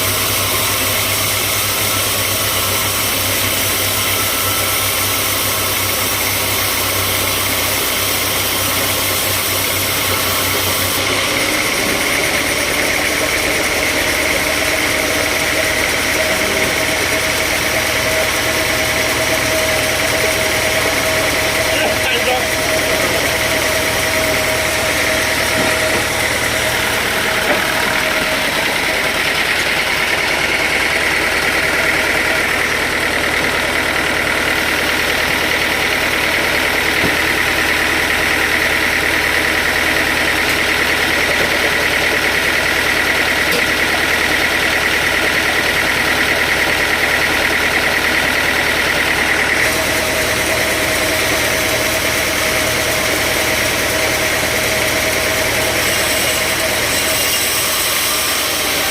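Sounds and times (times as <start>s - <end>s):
sawmill machinery running: 0.0s - 58.9s
high whine: 13.9s - 39.3s.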